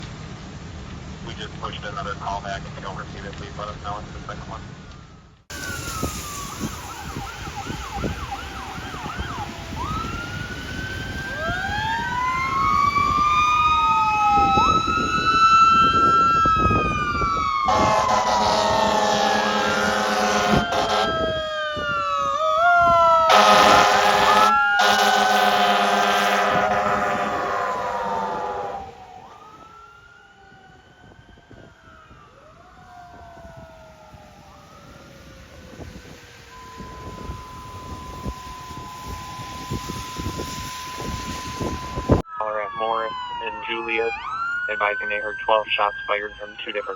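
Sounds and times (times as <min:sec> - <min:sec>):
fire engine siren: 0:02.9 - 0:46.9
air horn blast: 0:17.7 - 0:21.2, 0:23.3 - 0:29.0.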